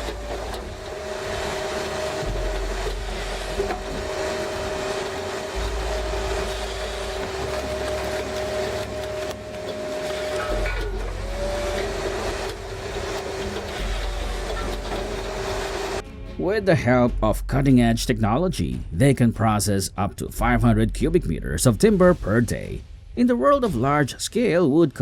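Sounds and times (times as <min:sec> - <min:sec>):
machine whining tones: 0:00.0 - 0:16.0
heavy machinery running: 0:00.0 - 0:17.9.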